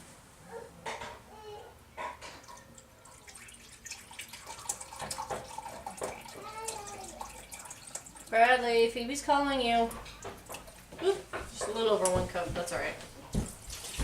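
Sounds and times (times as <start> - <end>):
broth pouring and splashing: 2.4 - 8.5.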